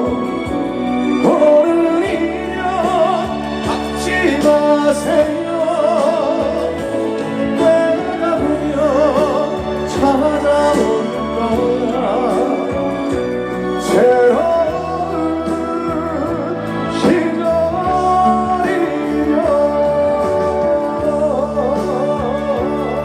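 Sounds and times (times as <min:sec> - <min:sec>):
live band playing ballad: 0:00.0 - 0:23.0.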